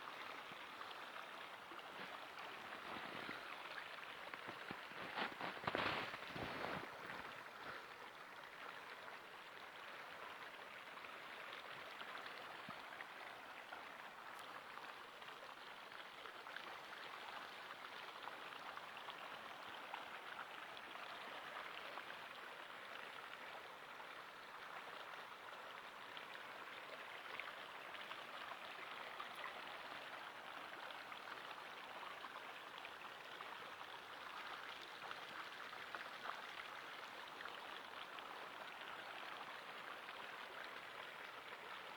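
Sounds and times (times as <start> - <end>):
river flowing over stones: 0.0 - 9.7.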